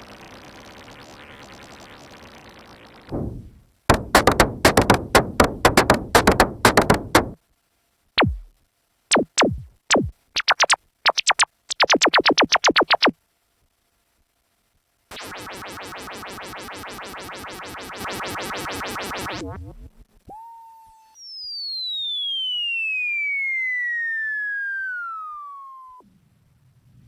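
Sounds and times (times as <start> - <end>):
rapid synth pulse: 3.1 - 7.4, 8.2 - 8.5, 9.1 - 13.1
synthesizer notes and zaps: 3.1 - 7.4, 8.2 - 8.5, 9.1 - 13.1.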